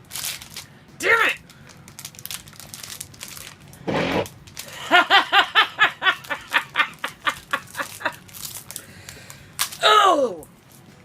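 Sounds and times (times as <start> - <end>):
woman laughing: 4.7 - 8.2.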